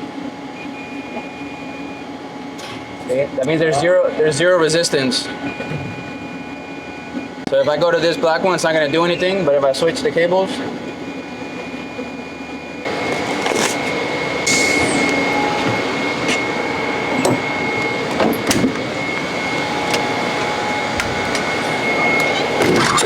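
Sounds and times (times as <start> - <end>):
thin high whine: 4.7 - 23.0
vehicle cabin noise: 12.9 - 23.0.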